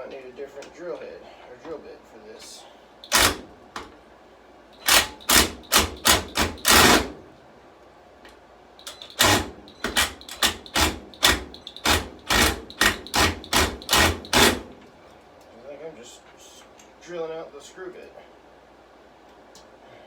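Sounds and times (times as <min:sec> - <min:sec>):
power drill driving screw into wood: 0:03.0 - 0:03.5, 0:04.8 - 0:07.2, 0:08.9 - 0:14.8.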